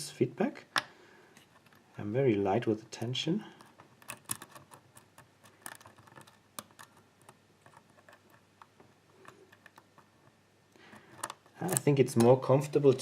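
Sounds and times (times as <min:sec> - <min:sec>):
lock pick metallic clicks: 0:03.6 - 0:10.0.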